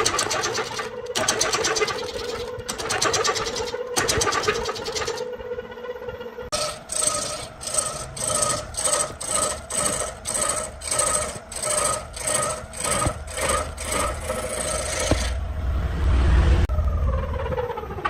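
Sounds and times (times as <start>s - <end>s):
hand tool rasping wood: 0.0s - 5.2s, 6.5s - 15.4s.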